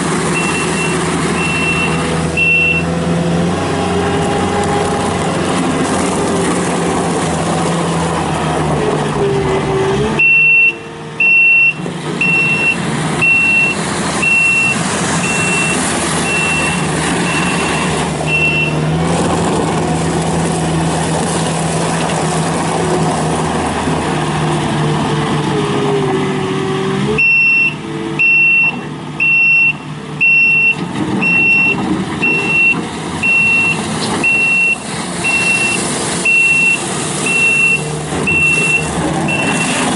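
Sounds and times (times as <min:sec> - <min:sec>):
loader engine running: 0:00.0 - 0:39.9
reverse alarm beeping: 0:00.4 - 0:02.9, 0:10.2 - 0:18.8, 0:27.2 - 0:39.8.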